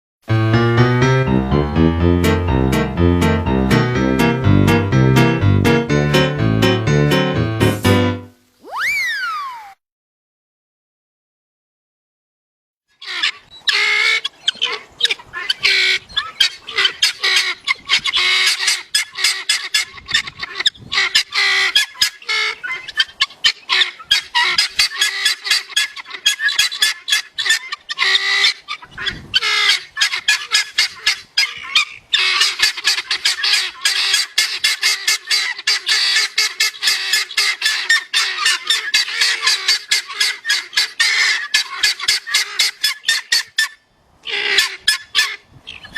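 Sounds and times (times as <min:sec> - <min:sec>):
guineafowl calling: 0:08.6 - 0:09.8, 0:13.0 - 0:45.9.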